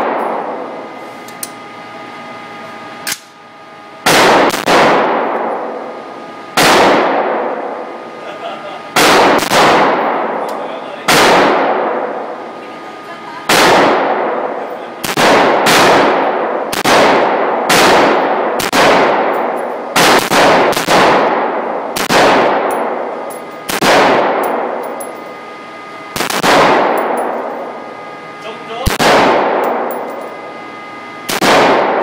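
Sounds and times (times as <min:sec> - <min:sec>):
rifle shots echoing: 0:04.0 - 0:05.7, 0:06.6 - 0:07.7, 0:09.0 - 0:10.4, 0:11.1 - 0:12.2, 0:13.5 - 0:25.0, 0:26.2 - 0:27.7, 0:28.9 - 0:30.1, 0:31.3 - 0:32.0.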